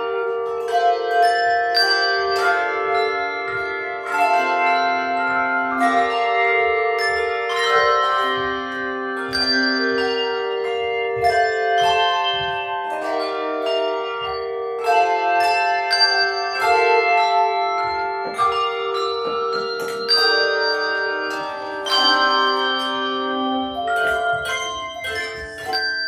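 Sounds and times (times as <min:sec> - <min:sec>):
handbell choir playing: 0:00.0 - 0:26.0.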